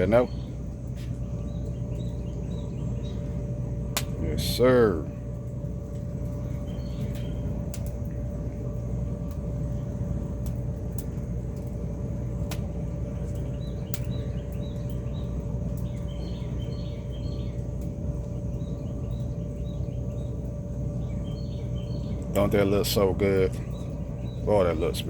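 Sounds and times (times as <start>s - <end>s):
bird chirps: 1.2s - 3.4s, 6.4s - 7.5s, 13.4s - 17.7s, 21.0s - 22.4s, 23.6s - 25.0s.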